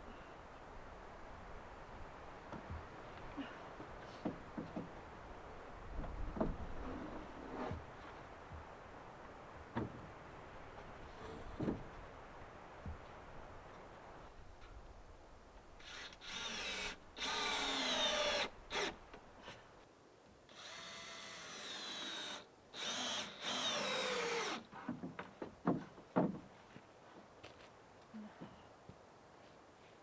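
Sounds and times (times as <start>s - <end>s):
power drill driving screws: 15.8s - 19.0s, 20.5s - 24.6s.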